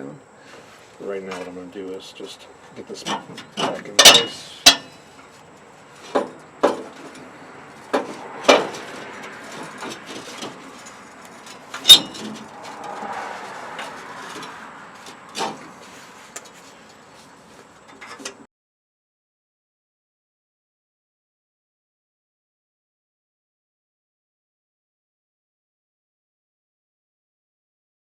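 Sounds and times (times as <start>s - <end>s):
scraping and shuffling: 0.4s - 18.4s.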